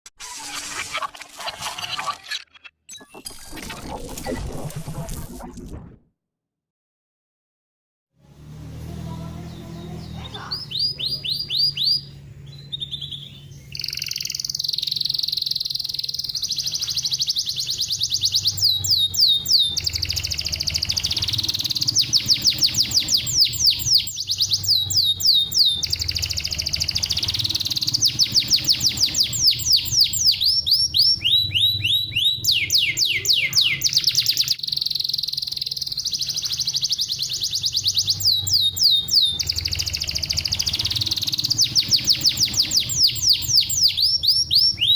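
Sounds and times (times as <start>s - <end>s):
canary singing: 9.4s - 44.9s.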